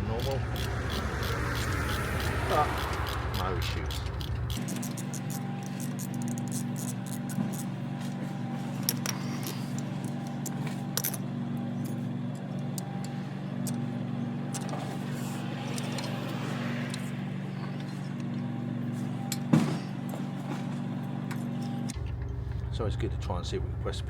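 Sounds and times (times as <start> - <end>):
low hum: 0.0 - 6.8.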